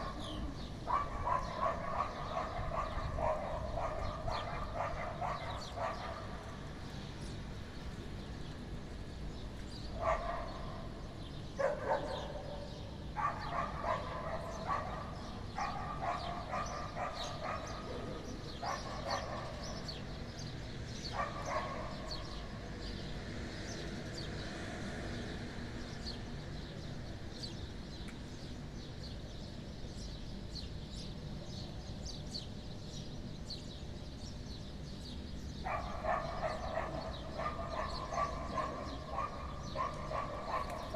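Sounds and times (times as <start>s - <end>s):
dogs barking: 0.0s - 6.8s, 9.9s - 23.1s, 35.5s - 40.9s.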